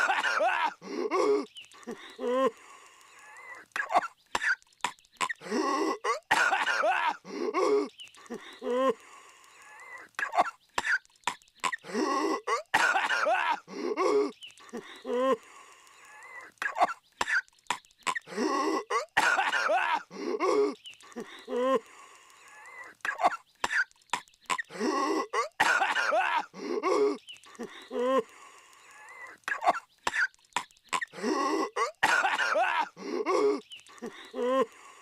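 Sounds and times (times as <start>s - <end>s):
cartoon character coughing: 3.8s - 4.6s, 5.2s - 7.9s, 11.6s - 14.3s, 16.6s - 17.4s, 18.1s - 20.8s, 23.1s - 23.9s, 24.5s - 27.2s, 29.5s - 30.3s, 31.0s - 33.6s.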